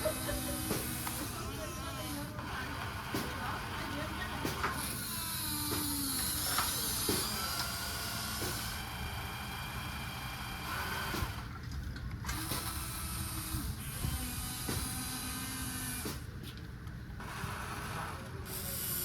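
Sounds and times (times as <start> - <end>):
small electric motors whining: 0.0 - 11.5, 12.2 - 16.3, 17.2 - 19.0.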